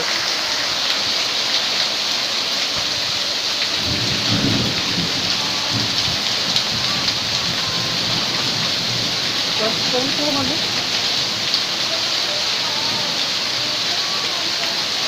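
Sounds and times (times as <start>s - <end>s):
hail and heavy rain: 0.0s - 15.0s.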